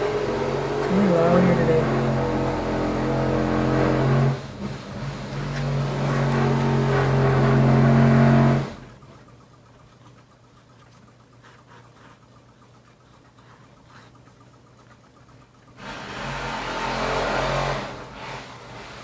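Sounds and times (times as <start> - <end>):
engine running loudly: 0.0 - 8.9.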